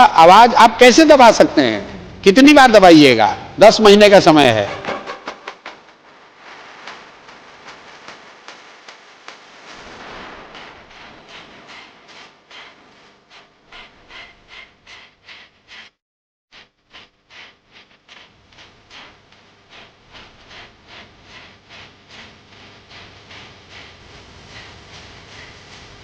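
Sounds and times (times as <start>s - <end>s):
rhythmic clapping: 4.8s - 5.8s, 6.8s - 9.6s.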